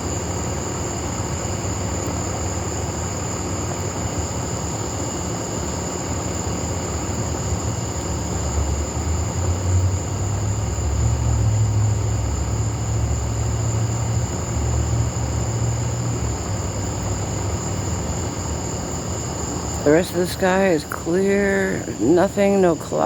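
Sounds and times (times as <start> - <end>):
high-pitched hum: 8.5 - 23.0.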